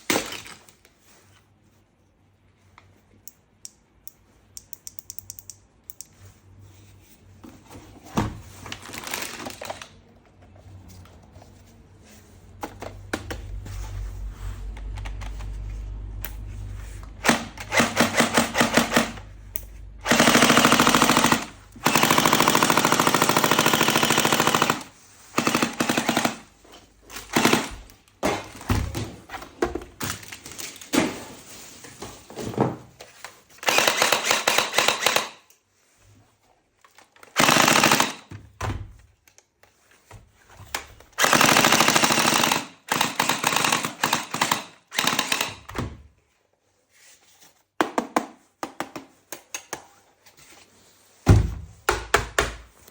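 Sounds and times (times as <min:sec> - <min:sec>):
small clicks: 0:03.2 - 0:06.2
toy rifle automatic fire: 0:17.2 - 0:19.2, 0:20.0 - 0:26.5, 0:33.6 - 0:35.4, 0:37.4 - 0:38.3, 0:41.2 - 0:45.7.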